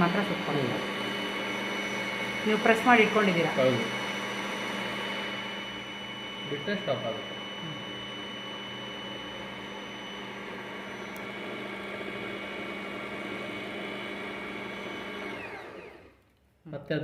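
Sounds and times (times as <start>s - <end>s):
sewing machine motor whirring: 14.3s - 16.3s.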